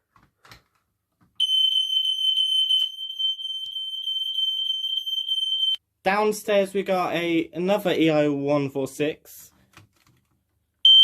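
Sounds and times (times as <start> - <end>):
smoke alarm high-pitched tone: 1.4 - 5.8.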